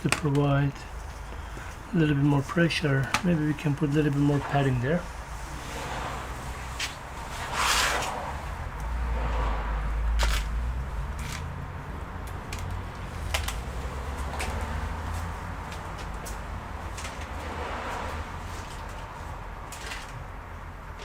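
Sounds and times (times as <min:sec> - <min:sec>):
rustle: 0:00.8 - 0:09.0.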